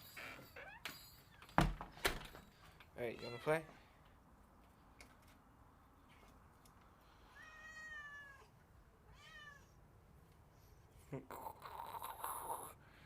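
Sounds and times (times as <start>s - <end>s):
cat meowing: 3.2s - 3.9s, 7.3s - 8.5s, 9.1s - 9.8s.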